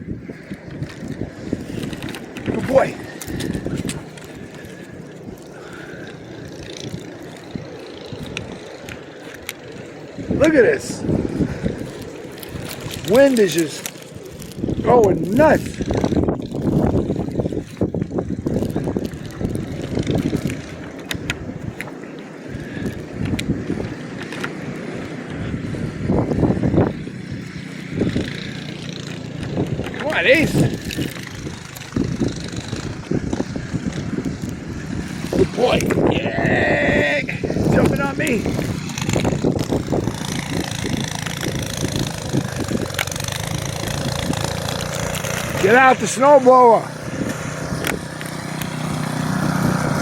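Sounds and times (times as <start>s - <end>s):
engine running: 0.0s - 50.0s
wind buffeting microphone: 0.0s - 50.0s
sharp ticks: 37.6s - 50.0s.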